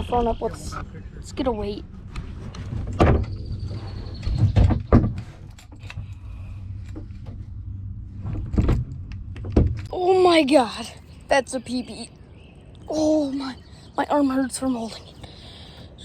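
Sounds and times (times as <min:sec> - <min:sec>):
low rumble: 0:00.0 - 0:14.0
knocks and bumps: 0:02.1 - 0:06.1, 0:06.7 - 0:10.0.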